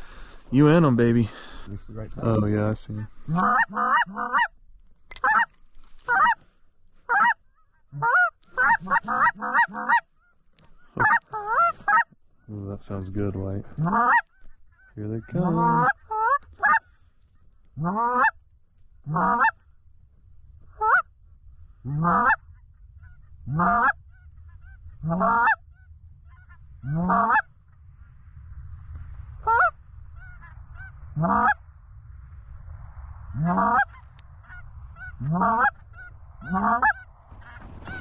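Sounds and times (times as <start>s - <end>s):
goose call honks: 3.3s - 4.6s, 5.2s - 6.4s, 7.0s - 10.1s, 10.8s - 12.2s, 13.8s - 16.9s, 17.8s - 18.4s, 19.0s - 19.6s, 20.7s - 21.1s, 21.8s - 22.4s, 23.0s - 25.6s, 26.3s - 27.5s, 29.4s - 31.6s, 33.4s - 38.0s.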